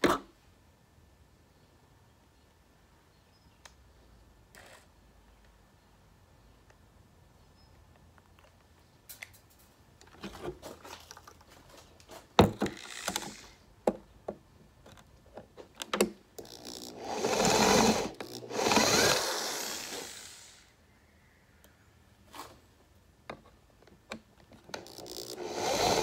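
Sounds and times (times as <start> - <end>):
parts handled on a bench: 7.9 - 16.2
small electric drill: 12.8 - 13.6, 16.4 - 20.7, 24.7 - 26.0.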